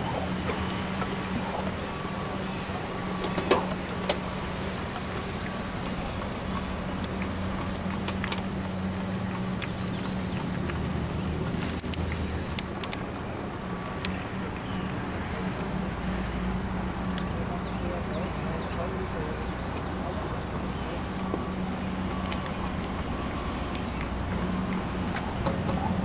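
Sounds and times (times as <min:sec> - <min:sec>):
low mechanical hum: 0:00.0 - 0:26.0
wavering high whine: 0:00.0 - 0:26.0
clicks: 0:05.0 - 0:13.2, 0:22.2 - 0:23.1.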